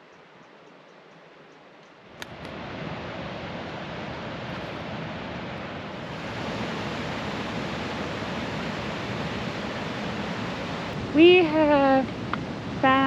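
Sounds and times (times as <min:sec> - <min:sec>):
waterfall rushing: 0:02.2 - 0:13.0.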